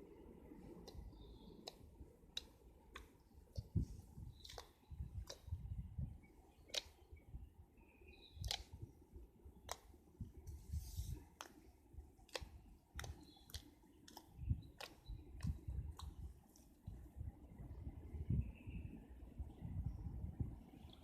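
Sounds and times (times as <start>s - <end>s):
slime clicking and popping: 0.8s - 5.6s, 6.5s - 7.0s, 8.3s - 8.8s, 9.6s - 10.0s, 12.2s - 16.2s.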